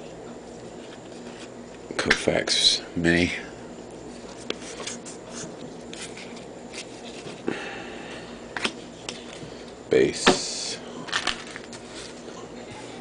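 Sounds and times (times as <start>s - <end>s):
cards rustling and clicking: 11.1s - 12.3s.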